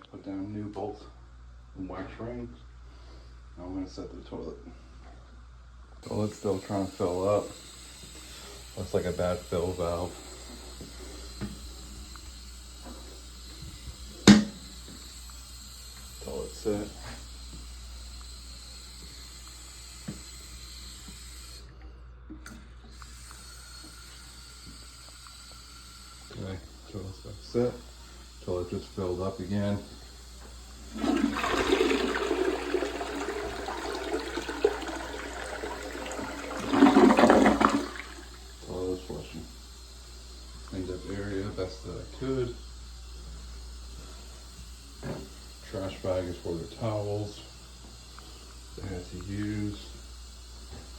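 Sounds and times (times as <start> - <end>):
faint steady hiss: 5.9 - 21.8, 23.0 - 50.9
toilet flushing: 6.0 - 15.0, 27.4 - 39.8
toilet knocking on flange: 14.3 - 14.6.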